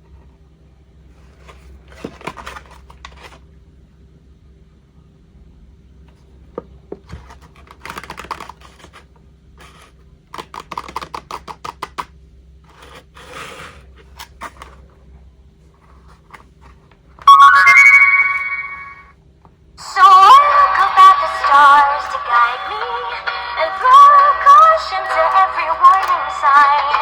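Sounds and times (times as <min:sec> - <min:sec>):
toy packaging being opened: 0:01.4 - 0:03.4, 0:07.2 - 0:12.0, 0:25.1 - 0:26.7
loud electronic jingle: 0:17.3 - 0:19.1.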